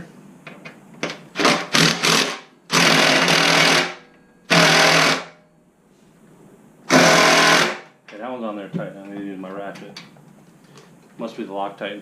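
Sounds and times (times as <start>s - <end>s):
impact wrench hammering: 1.1s - 5.4s.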